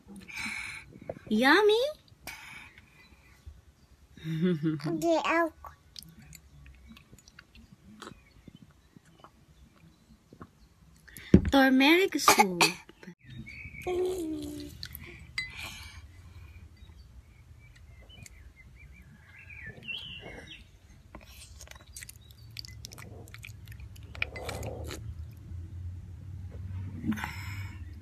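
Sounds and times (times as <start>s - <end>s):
toddler chewing and smacking: 5.6s - 11.0s, 17.6s - 25.6s.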